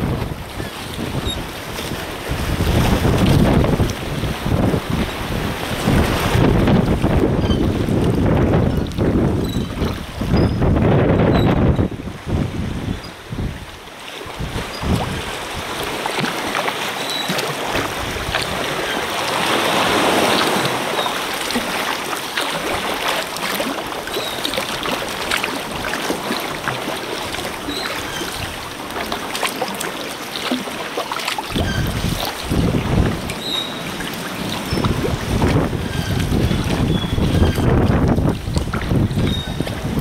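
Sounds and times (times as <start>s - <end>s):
wind buffeting microphone: 0.0s - 16.6s, 17.6s - 21.8s, 31.5s - 40.0s
water splashing around kayak: 0.0s - 40.0s.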